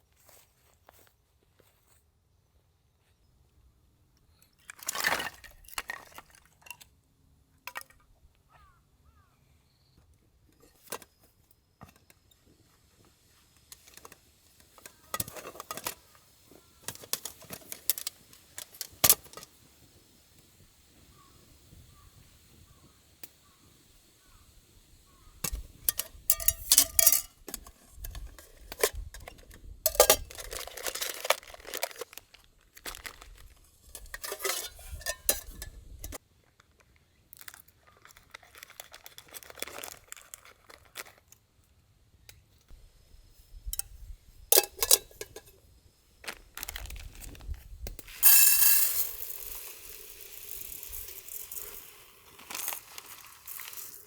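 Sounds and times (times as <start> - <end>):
cookware and utensils clinking: 25.5 - 32.0, 33.8 - 36.2, 44.5 - 45.6
packaging rustling and crinkling: 30.0 - 34.4, 37.4 - 41.3, 46.2 - 47.6, 51.6 - 54.0.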